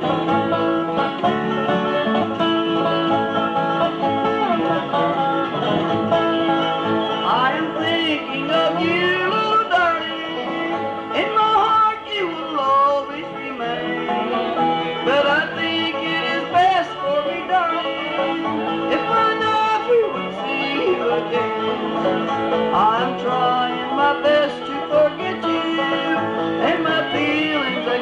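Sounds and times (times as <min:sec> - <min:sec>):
bluegrass band playing: 0:00.0 - 0:28.0.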